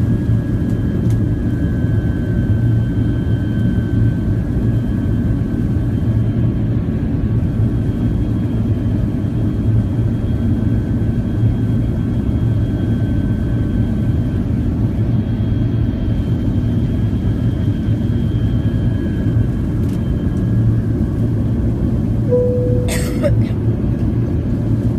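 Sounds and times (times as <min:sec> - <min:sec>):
jet engine roar in cabin: 0:00.0 - 0:24.9
faint high whine: 0:22.3 - 0:23.6.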